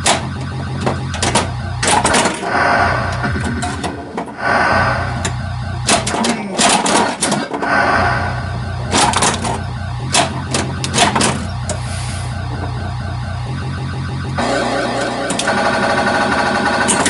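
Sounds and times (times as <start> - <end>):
pinball mechanical clatter: 0.0 - 7.8, 8.8 - 11.8, 14.4 - 17.0
pulsing electronic background sound: 0.3 - 5.9, 7.6 - 16.8.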